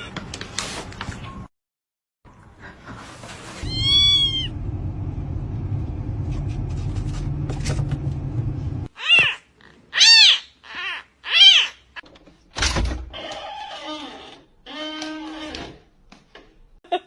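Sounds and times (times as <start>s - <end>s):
cat meowing: 3.6s - 4.6s, 8.9s - 11.8s
cat low rumble: 3.6s - 8.0s.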